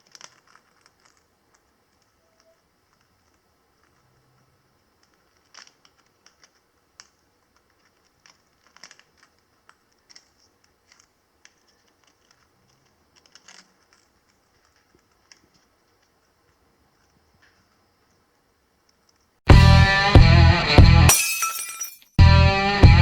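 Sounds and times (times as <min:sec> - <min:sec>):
parrot crunching biscuit: 0:00.0 - 0:17.8.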